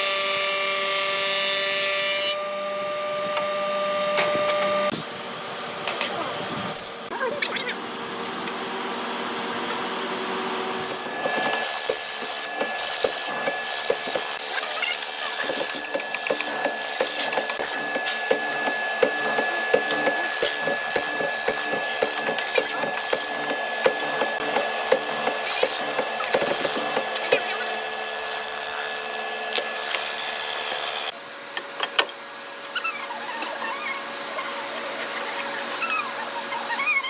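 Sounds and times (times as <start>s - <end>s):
tool strokes on hardwood: 10.9s - 14.4s, 15.2s - 27.1s.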